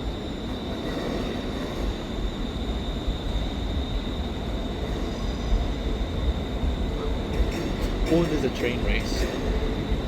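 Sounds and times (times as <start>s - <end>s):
electric train arriving: 0.0s - 10.0s.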